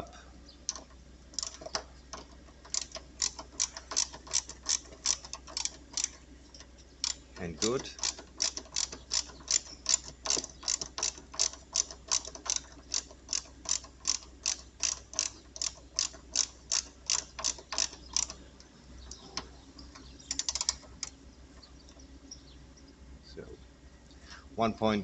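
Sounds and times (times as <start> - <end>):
ratchet tool clicking: 0.7 - 18.4, 20.2 - 21.1.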